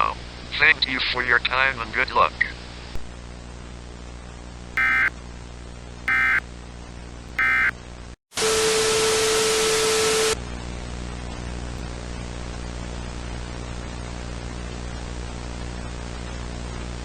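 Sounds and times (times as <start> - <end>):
loud static: 4.8 - 5.1, 6.1 - 6.4, 7.4 - 7.7
screechy data tones: 4.8 - 5.1, 6.1 - 6.4, 7.4 - 7.7.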